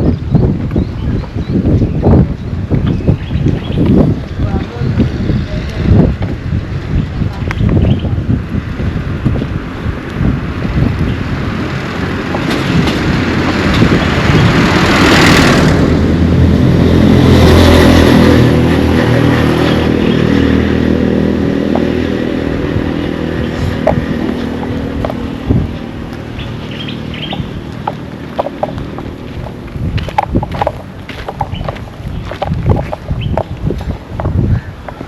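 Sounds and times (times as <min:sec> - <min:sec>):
vehicle engine passing: 0:08.2 - 0:34.2.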